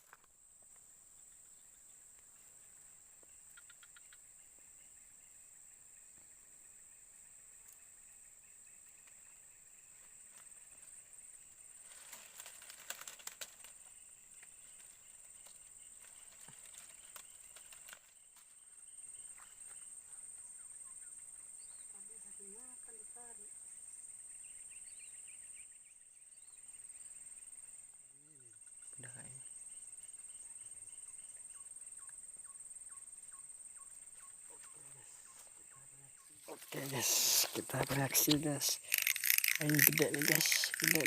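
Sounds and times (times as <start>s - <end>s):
high insect trill: 0.0s - 41.0s
rustles: 8.9s - 20.5s, 33.9s - 41.0s
sharp clicks: 36.9s - 41.0s.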